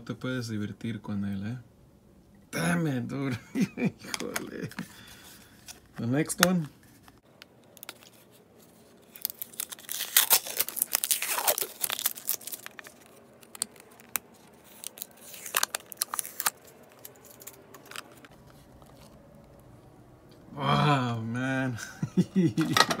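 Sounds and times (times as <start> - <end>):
packaging being torn and crinkled: 7.4 - 19.6.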